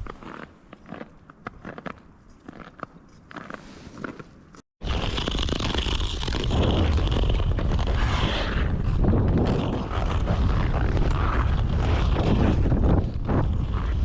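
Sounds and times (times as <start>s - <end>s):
wind buffeting microphone: 6.5s - 14.0s.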